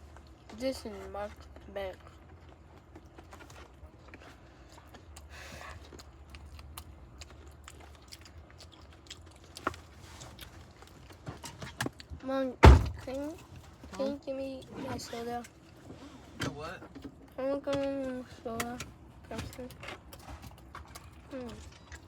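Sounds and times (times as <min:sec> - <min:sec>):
person chewing food: 0:01.4 - 0:12.2, 0:19.7 - 0:22.0.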